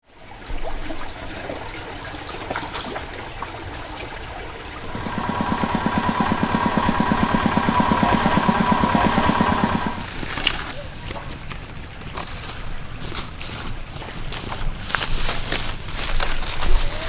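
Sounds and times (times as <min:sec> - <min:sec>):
small engine running fast: 0:04.7 - 0:10.4
scattered clicks: 0:04.8 - 0:10.6.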